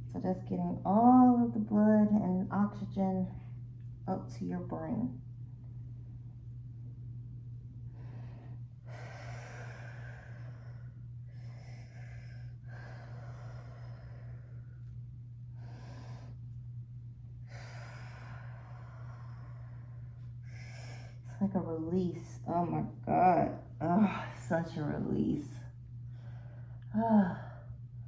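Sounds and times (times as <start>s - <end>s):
steady low hum: 0.0s - 28.0s
woman breathing deeply: 7.8s - 16.6s, 17.4s - 21.4s, 26.0s - 27.8s.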